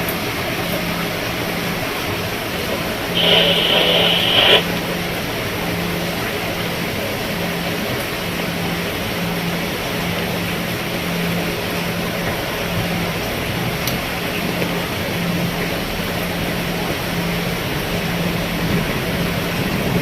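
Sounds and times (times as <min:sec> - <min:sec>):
loud high steady tone: 0:03.2 - 0:04.7
rain falling on a roof: 0:06.0 - 0:20.0.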